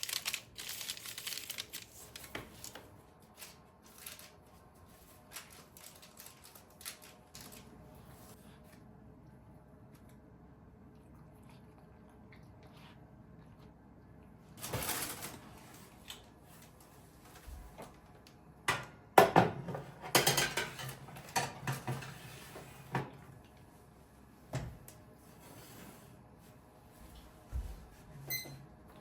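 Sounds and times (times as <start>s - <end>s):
dishes and utensils clattering: 19.2s - 22.6s.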